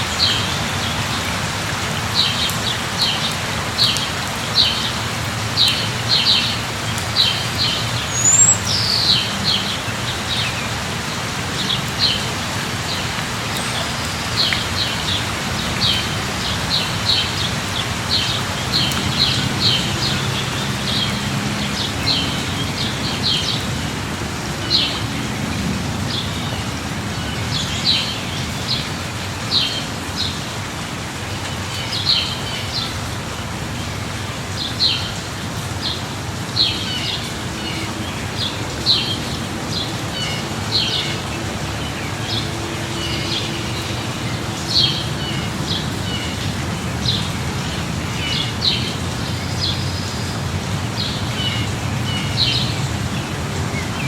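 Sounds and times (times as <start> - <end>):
birds chirping: 0.0 - 26.6
steady rain: 0.0 - 54.0.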